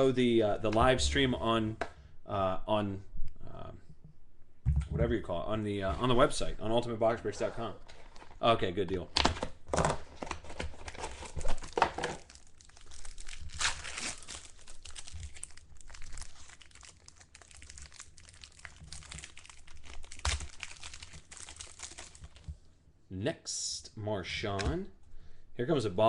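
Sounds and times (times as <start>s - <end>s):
wrappers crinkling and tearing: 9.7s - 22.5s.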